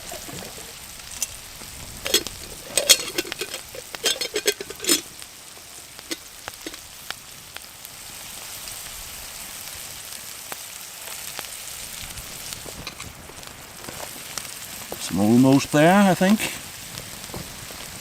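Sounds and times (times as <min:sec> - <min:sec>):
scraping in a pan: 0:00.0 - 0:06.8
bacon sizzling and popping: 0:00.0 - 0:18.0.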